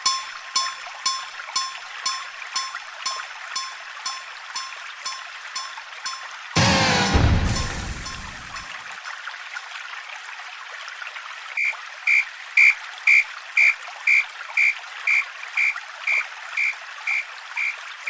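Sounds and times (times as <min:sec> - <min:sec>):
level crossing warning bell: 0:00.0 - 0:08.7.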